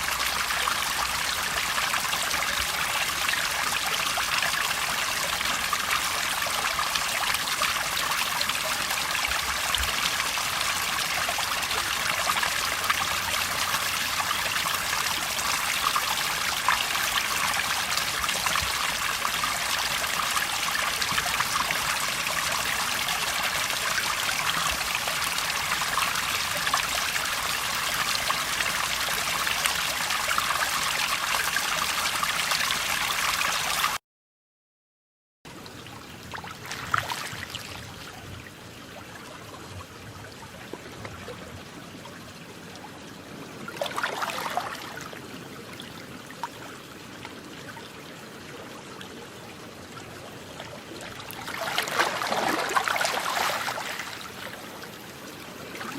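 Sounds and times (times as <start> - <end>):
water rushing and trickling: 0.0 - 34.0, 35.5 - 55.9
water gently lapping: 36.2 - 47.6, 50.0 - 55.9.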